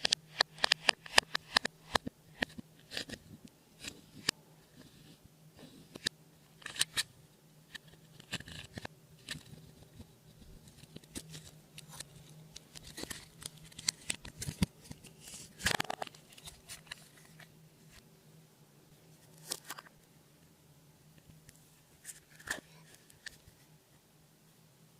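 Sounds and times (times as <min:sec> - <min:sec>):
faint low hum: 0:00.0 - 0:24.9.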